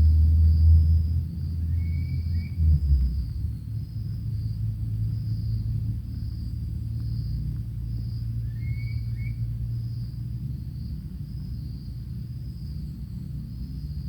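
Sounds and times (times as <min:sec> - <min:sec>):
insects calling: 0:03.8 - 0:14.0.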